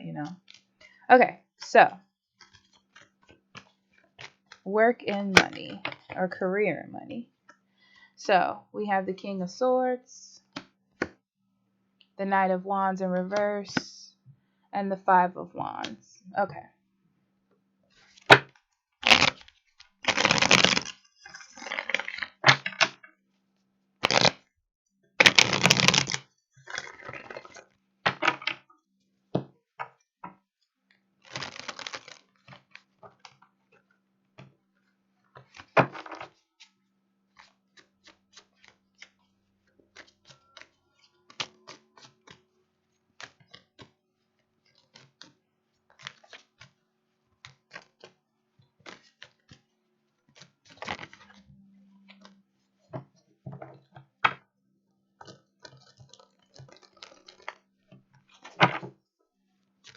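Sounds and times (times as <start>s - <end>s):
cards riffling: 19.0s - 22.8s, 24.0s - 24.4s, 25.2s - 27.6s, 31.2s - 32.8s, 50.7s - 51.3s, 55.6s - 57.6s.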